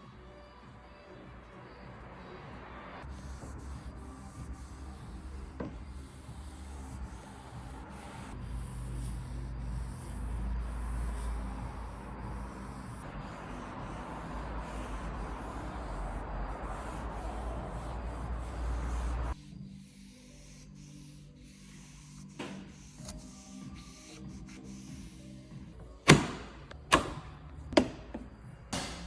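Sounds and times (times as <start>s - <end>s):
polisher rubbing hiss: 3.0s - 25.5s.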